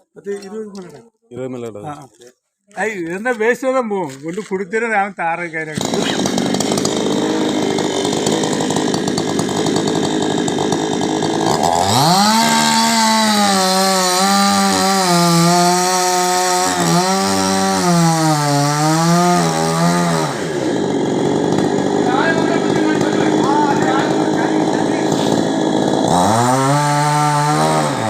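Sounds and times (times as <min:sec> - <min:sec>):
chainsaw revving and cutting: 0:05.6 - 0:28.0.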